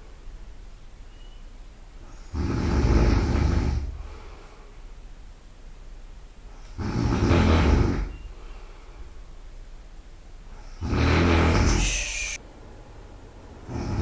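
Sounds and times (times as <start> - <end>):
quiet breathing: 2.0 - 5.1, 6.4 - 9.4
person snoring loudly: 2.1 - 4.0, 6.7 - 8.1, 10.6 - 12.4, 13.7 - 14.0.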